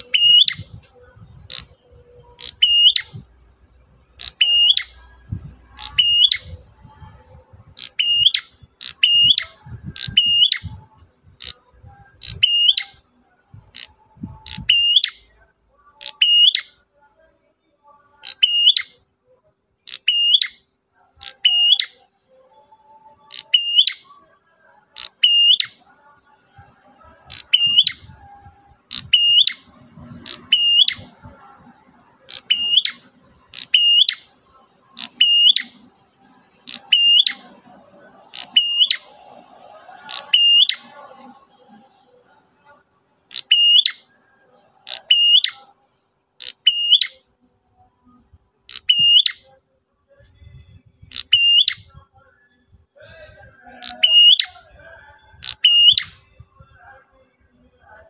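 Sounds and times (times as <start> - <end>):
bird calling sharp high notes: 0.0 - 3.2, 28.8 - 31.2.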